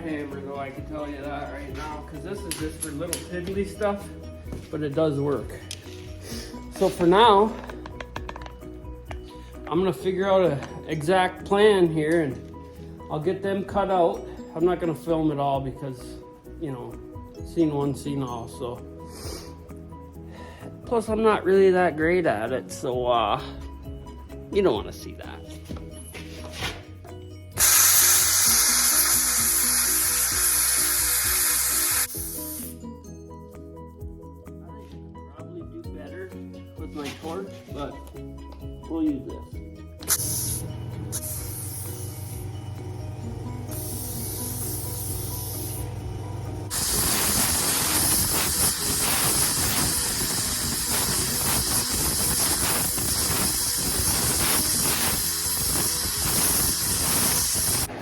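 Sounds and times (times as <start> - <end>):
background music: 0.0 - 58.0
plasma cutter hissing: 27.6 - 32.8, 40.0 - 42.5, 43.7 - 46.0, 46.7 - 57.9.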